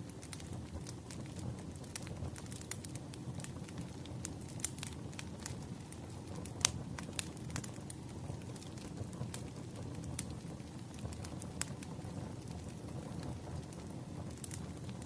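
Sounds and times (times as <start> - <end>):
wood fire crackling: 0.0 - 15.0.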